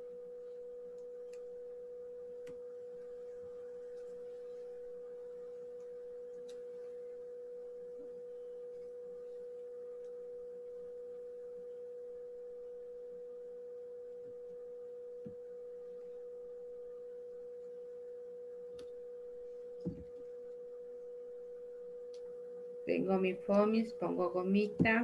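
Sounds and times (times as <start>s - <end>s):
soft tap: 19.8s - 20.2s.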